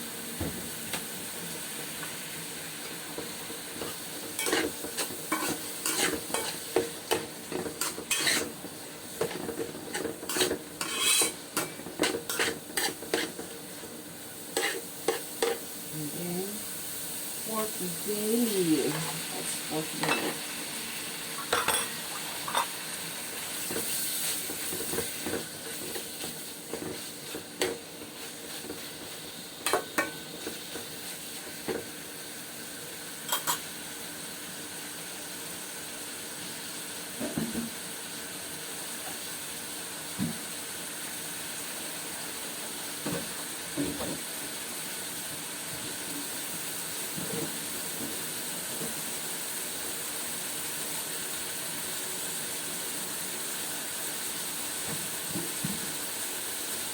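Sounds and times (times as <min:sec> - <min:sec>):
meat sizzling in a pan: 0:00.0 - 0:56.9
utensil scraping a pan: 0:03.8 - 0:08.6, 0:09.2 - 0:13.5, 0:14.6 - 0:15.6.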